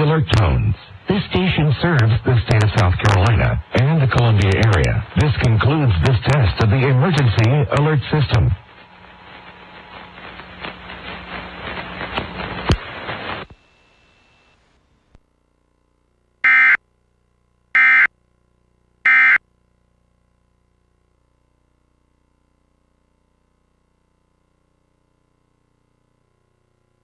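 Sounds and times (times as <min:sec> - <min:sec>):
static hiss: 0:00.0 - 0:15.2.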